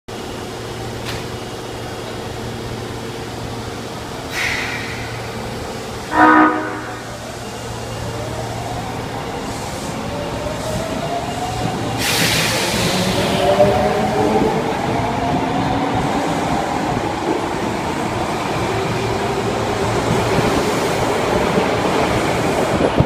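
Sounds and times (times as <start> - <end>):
air hissing: 4.3 - 5.6, 11.9 - 13.5
train horn blast: 6.1 - 7.1.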